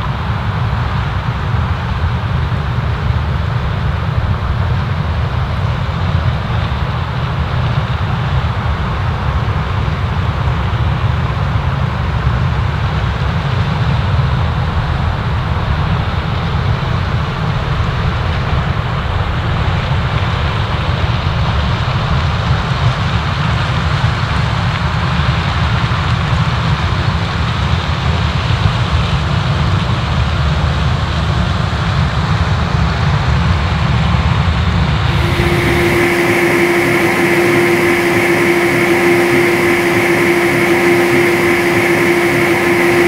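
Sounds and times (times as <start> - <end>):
heavy machinery rumbling: 35.1 - 43.0.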